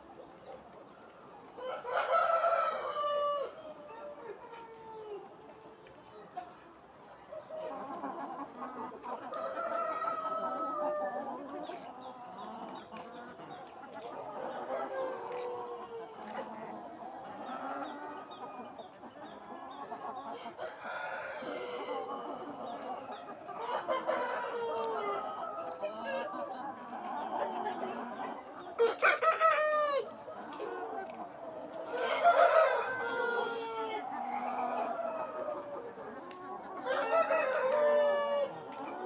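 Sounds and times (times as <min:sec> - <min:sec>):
flock of chickens clucking: 0:00.0 - 0:39.0.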